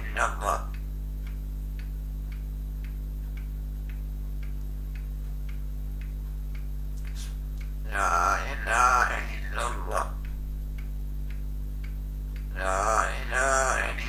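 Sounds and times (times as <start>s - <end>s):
person speaking: 0.0s - 0.9s, 6.2s - 11.4s, 12.3s - 14.0s
faint regular ticking: 0.0s - 14.0s
low electrical hum: 0.0s - 14.0s.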